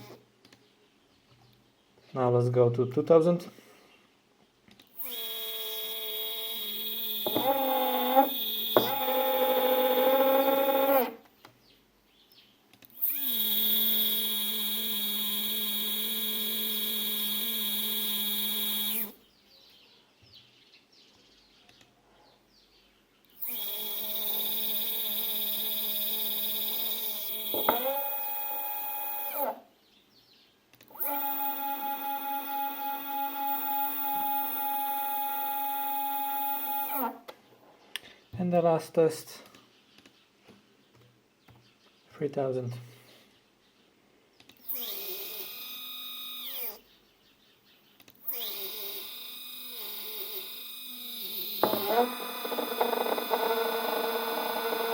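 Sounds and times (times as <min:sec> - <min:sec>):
motor clicks: 0:04.7 - 0:11.3, 0:12.7 - 0:19.2, 0:23.3 - 0:29.6, 0:30.7 - 0:37.4, 0:44.4 - 0:46.8, 0:48.0 - 0:54.9
stepper motors whining: 0:04.9 - 0:11.3, 0:12.9 - 0:19.2, 0:23.4 - 0:29.6, 0:30.8 - 0:37.2, 0:44.5 - 0:46.8, 0:48.1 - 0:54.9.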